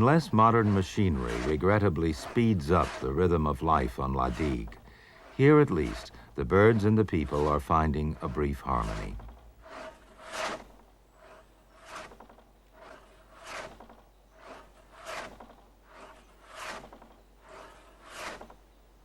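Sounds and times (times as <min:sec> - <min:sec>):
hand saw cutting timber: 0:00.0 - 0:18.6.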